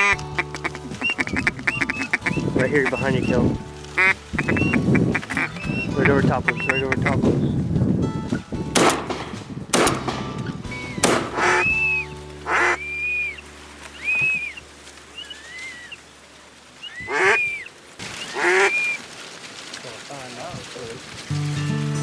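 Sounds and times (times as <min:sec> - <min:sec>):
honking waterfowl calls: 0:00.0 - 0:07.4, 0:10.7 - 0:16.2, 0:16.8 - 0:19.0
shotgun shots: 0:08.7 - 0:11.9.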